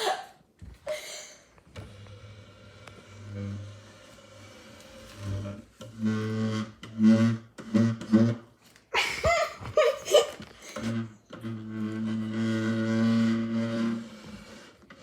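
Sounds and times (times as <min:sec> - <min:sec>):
chair low droning tone: 0:01.8 - 0:08.3.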